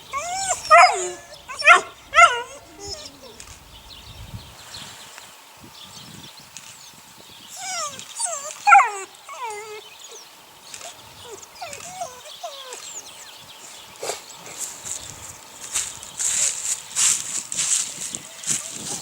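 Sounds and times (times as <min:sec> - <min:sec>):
puppies whining and yelping: 0:00.0 - 0:03.5, 0:07.6 - 0:10.2, 0:10.8 - 0:13.2.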